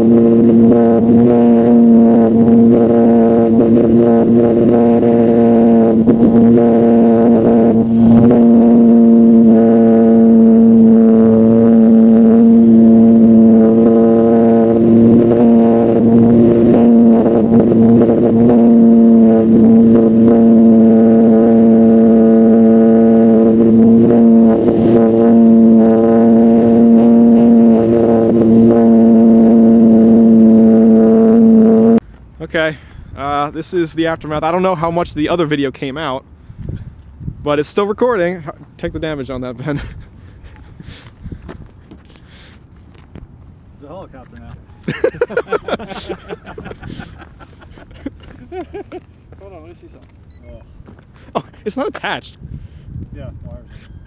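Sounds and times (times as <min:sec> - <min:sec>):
electric motor and propeller whining: 0:00.0 - 0:32.0.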